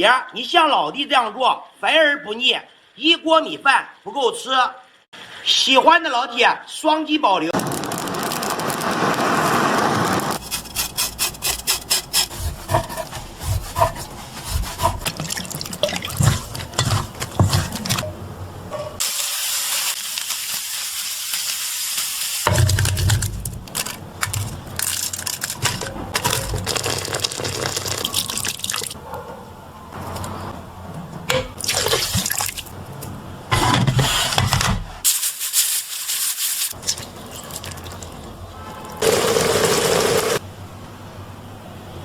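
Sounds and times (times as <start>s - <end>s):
water running: 10.4s - 19.2s, 22.4s - 29.0s, 36.4s - 40.4s.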